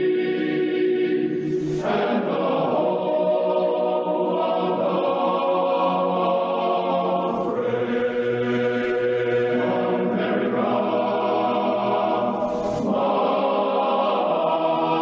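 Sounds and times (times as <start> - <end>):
choir singing held chords: 0.0 - 15.0.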